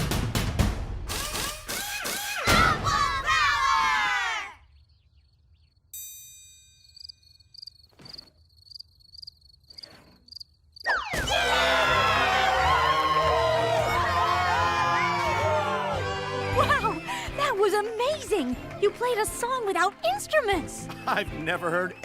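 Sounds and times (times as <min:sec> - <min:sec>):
cheering: 0:02.4 - 0:04.6, 0:11.2 - 0:19.0.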